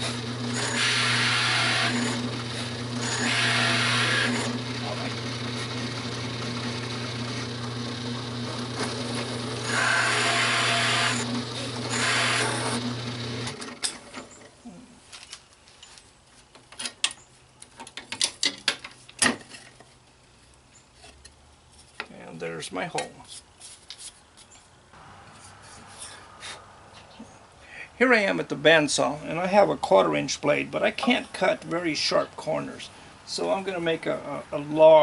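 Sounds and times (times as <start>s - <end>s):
drill press hole saw cutting wood: 0.0s - 14.4s.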